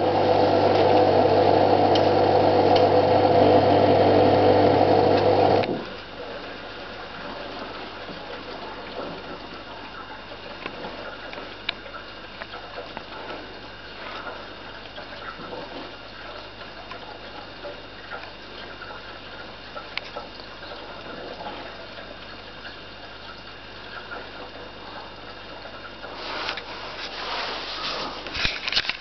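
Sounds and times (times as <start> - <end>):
dishwasher water running: 0.0 - 6.0, 23.8 - 29.0.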